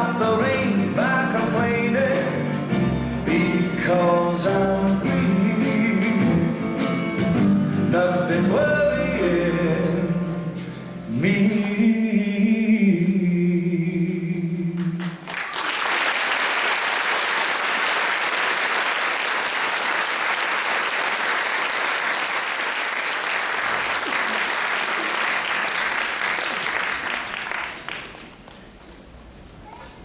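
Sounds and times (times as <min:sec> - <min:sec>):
audience applauding: 0:15.0 - 0:28.8.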